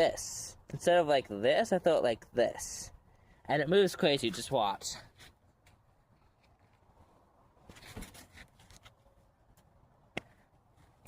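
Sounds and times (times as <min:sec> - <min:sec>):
soft rustle: 0:05.0 - 0:09.3.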